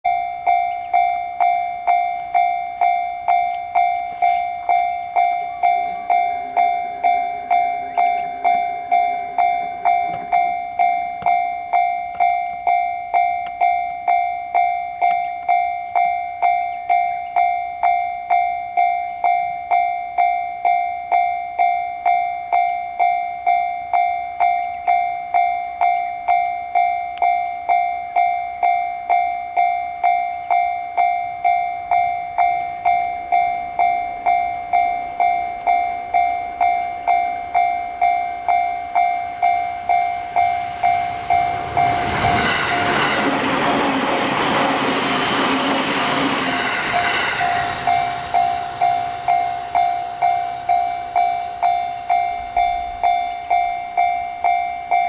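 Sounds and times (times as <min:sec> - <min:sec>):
railroad crossing bell ringing: 0:00.0 - 0:55.0.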